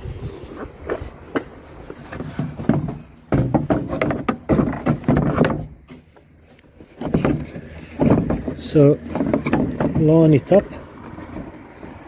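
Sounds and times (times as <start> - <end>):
plastic headlight knocks and scrapes: 1.4 - 12.0.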